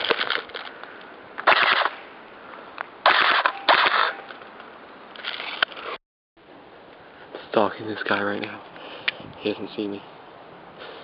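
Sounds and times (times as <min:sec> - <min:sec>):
airsoft guns firing: 0:01.4 - 0:02.0, 0:03.1 - 0:04.2.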